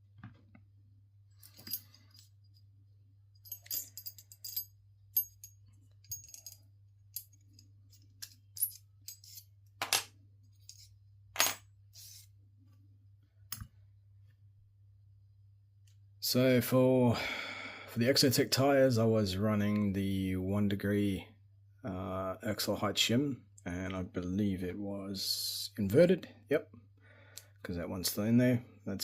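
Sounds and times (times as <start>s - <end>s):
low steady hum: 0.0s - 26.0s
metal parts clinking on workbench: 1.4s - 2.7s, 3.4s - 12.2s.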